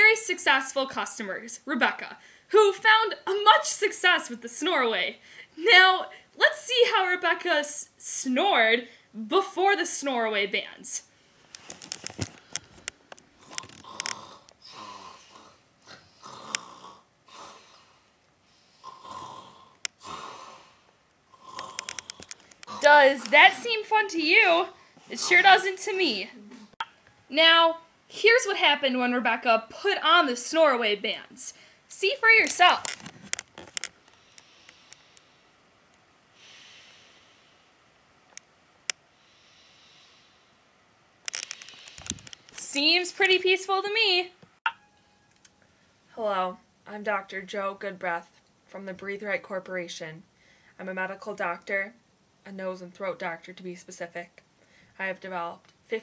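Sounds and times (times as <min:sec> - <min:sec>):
soft sleeping breaths: 0:11.1 - 0:22.9, 0:34.0 - 0:35.7, 0:36.3 - 0:38.0, 0:39.0 - 0:42.5
person snoring: 0:13.4 - 0:23.1
small clicks: 0:21.8 - 0:23.4, 0:41.2 - 0:42.7
sharp clicks: 0:41.2 - 0:42.7.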